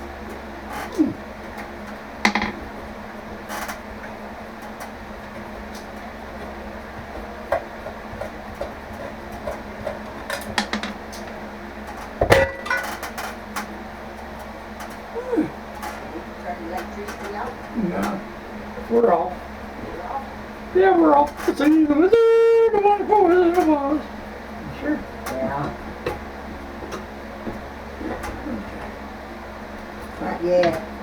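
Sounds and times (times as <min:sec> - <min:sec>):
steady low hum: 0:00.0 - 0:31.0.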